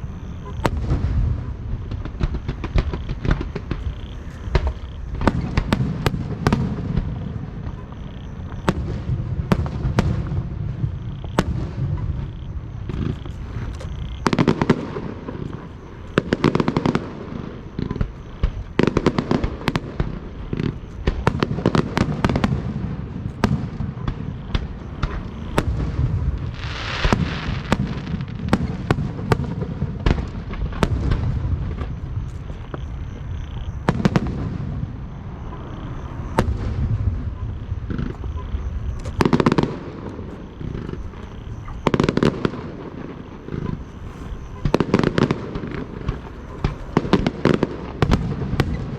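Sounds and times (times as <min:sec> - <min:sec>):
low rumble of booms: 0:00.0 - 0:18.8, 0:19.4 - 0:48.9
fireworks bangs and crackles: 0:00.0 - 0:48.9.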